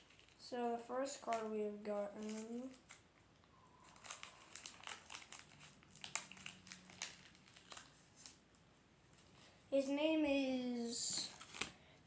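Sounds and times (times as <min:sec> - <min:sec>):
plastic wrapper crinkling: 0:00.0 - 0:09.5, 0:10.8 - 0:11.8.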